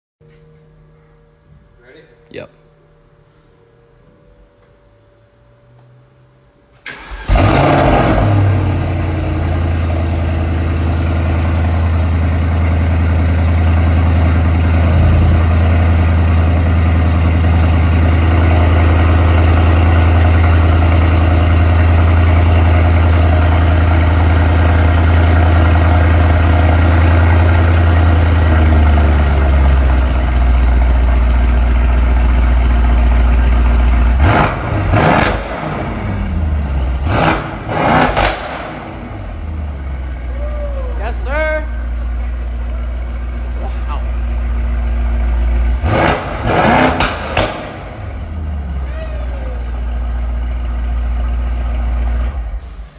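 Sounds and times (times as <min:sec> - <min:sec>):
car engine starting and idling: 0:04.0 - 0:52.9
engine revving: 0:06.9 - 0:40.2, 0:45.4 - 0:52.9.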